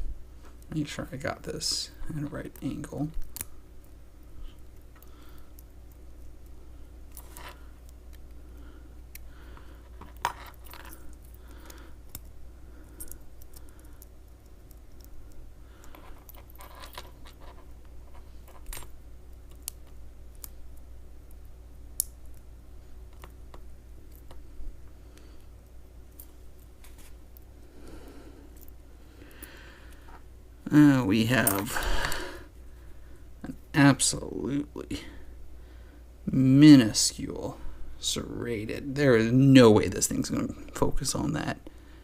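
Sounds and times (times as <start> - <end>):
steady low hum: 0.0 - 42.0
small metal parts clicking: 15.8 - 20.5.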